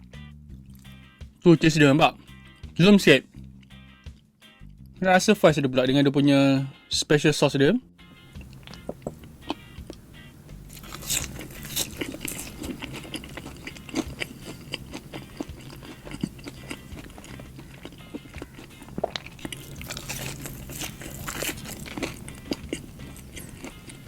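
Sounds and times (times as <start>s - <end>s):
crunchy chewing of a burger: 8.2s - 24.0s.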